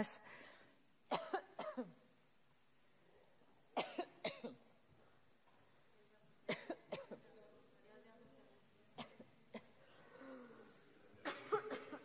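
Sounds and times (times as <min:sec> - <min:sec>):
woman coughing: 0:01.1 - 0:02.0, 0:03.8 - 0:04.7, 0:06.5 - 0:07.3, 0:09.0 - 0:10.4, 0:11.2 - 0:12.0.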